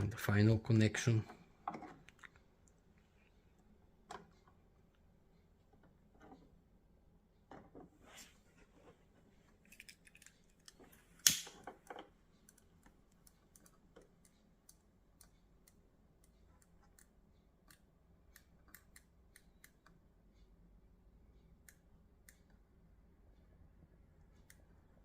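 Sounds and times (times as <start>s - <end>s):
small clicks from wiring connectors: 9.7s - 20.0s.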